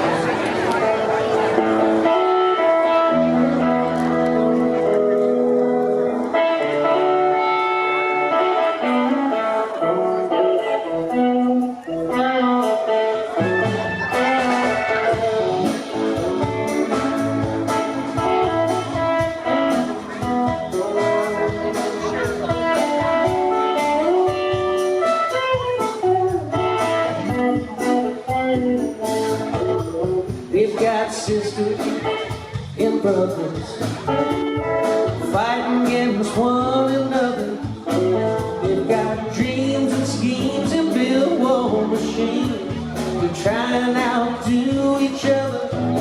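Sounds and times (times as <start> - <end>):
guitar melody notes: 0.0 - 46.0
live band playing slow blues: 0.0 - 46.0
steady drum beat: 12.5 - 46.0.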